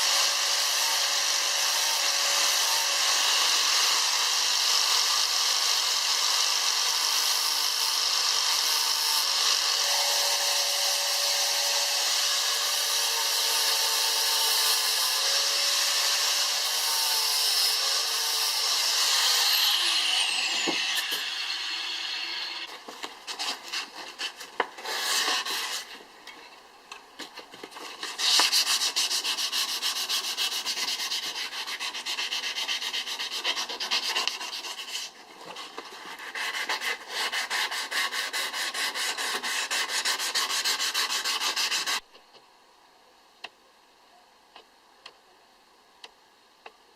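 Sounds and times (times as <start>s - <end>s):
power tool running: 0.0s - 22.7s
hand sanding strokes: 16.8s - 26.0s, 27.8s - 42.0s.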